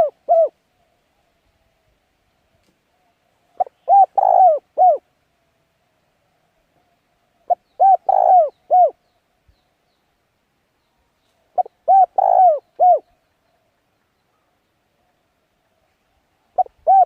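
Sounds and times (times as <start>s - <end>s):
bird calling: 2.9s - 5.0s, 7.4s - 9.0s, 11.5s - 14.7s, 16.6s - 17.0s.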